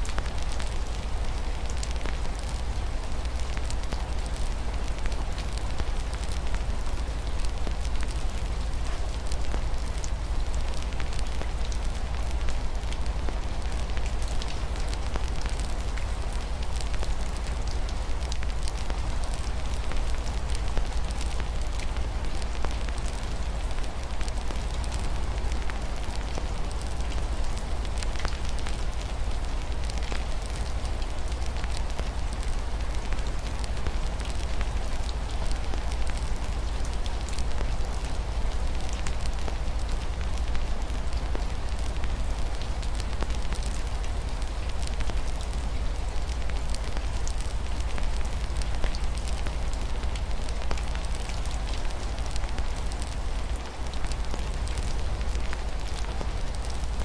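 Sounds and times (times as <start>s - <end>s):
rain on a window: 0.0s - 57.0s
fire crackling: 3.3s - 57.0s.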